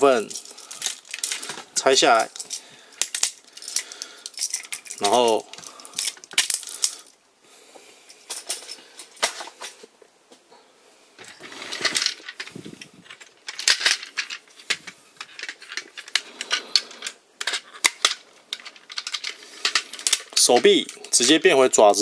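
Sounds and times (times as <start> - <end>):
plastic toy parts clicking: 2.2 - 7.0, 13.1 - 21.4.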